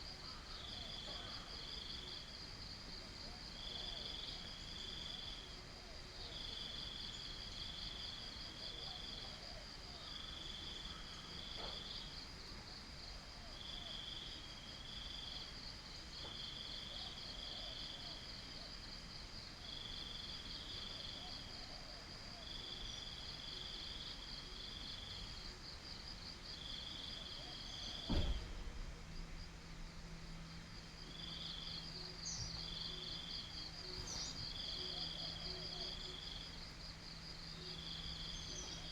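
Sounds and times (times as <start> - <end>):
cricket chirping in bursts: 0.0 - 38.9
cricket trilling: 6.2 - 38.9
low steady hum: 24.5 - 38.9
sharp knock: 28.0 - 29.2.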